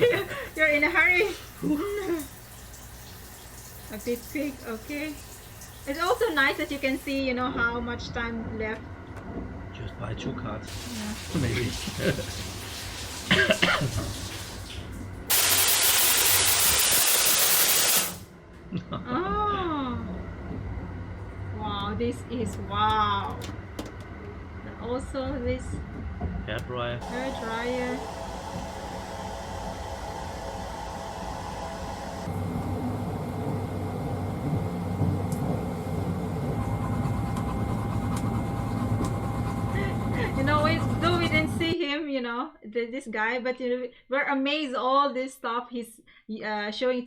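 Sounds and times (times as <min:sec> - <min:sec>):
shower head spraying water: 0:00.0 - 0:07.2, 0:10.7 - 0:18.2, 0:27.0 - 0:32.4
train rumbling inside carriage: 0:19.0 - 0:41.8.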